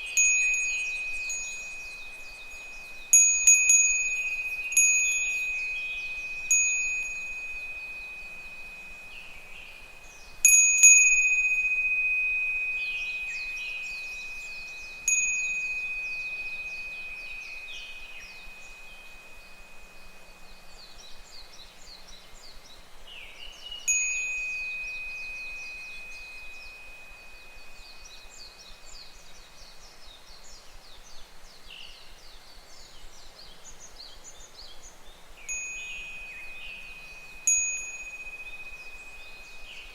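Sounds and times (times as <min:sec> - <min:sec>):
wind bell ringing: 0:00.0 - 0:21.1, 0:23.9 - 0:28.6, 0:35.5 - 0:39.9
cicadas calling: 0:00.0 - 0:31.4, 0:32.0 - 0:39.9.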